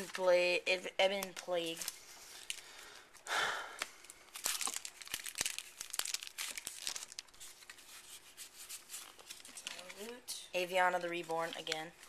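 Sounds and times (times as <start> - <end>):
foil wrapper crinkling: 3.8 - 8.3.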